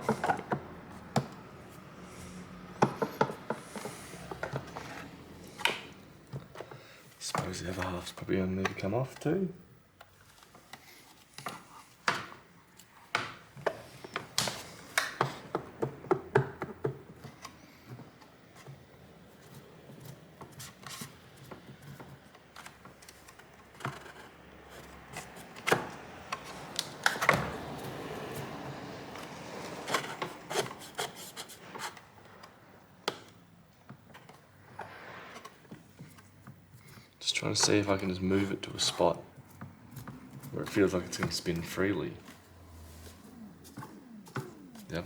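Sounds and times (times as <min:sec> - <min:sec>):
plastic and tools clicking and knocking: 0:00.0 - 0:38.1, 0:38.8 - 0:45.0
plastic rubbing: 0:10.1 - 0:45.0.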